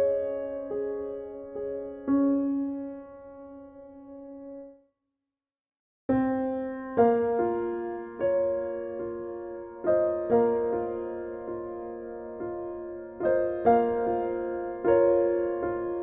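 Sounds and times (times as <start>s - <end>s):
soft piano music: 0.0s - 4.8s, 6.1s - 16.0s.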